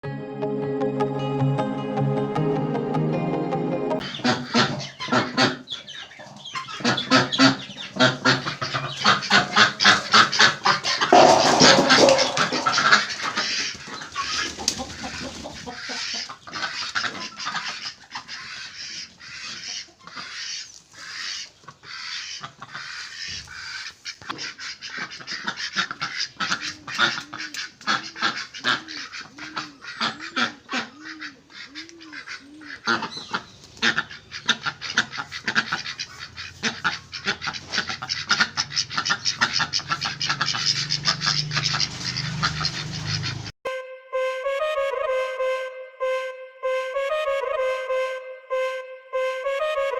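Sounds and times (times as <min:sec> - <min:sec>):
ducks quacking: 0:04.0 - 0:43.6.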